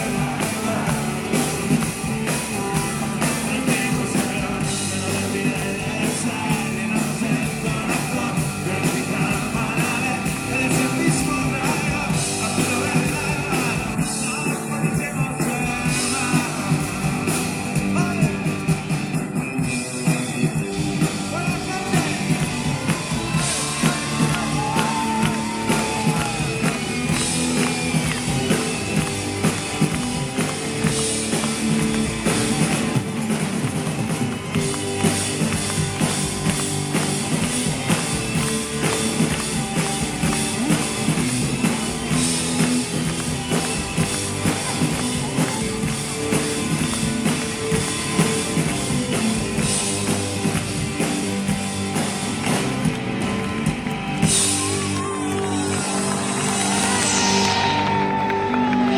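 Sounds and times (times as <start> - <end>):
person singing: 0.0 - 18.4, 19.4 - 26.8
drum kit: 0.0 - 58.9
guitar: 0.0 - 58.9.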